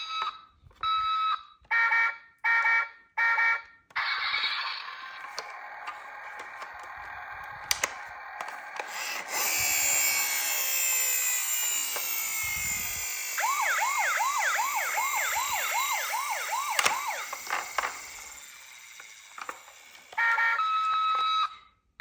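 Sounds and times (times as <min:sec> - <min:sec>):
toy electronic siren: 0:00.0 - 0:21.7
clicks: 0:05.2 - 0:09.0.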